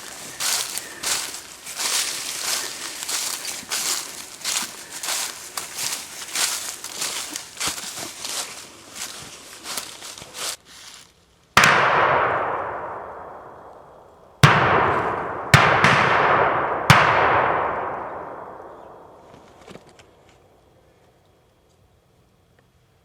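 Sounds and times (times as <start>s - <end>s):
shotgun shots echoing: 11.6s - 19.4s.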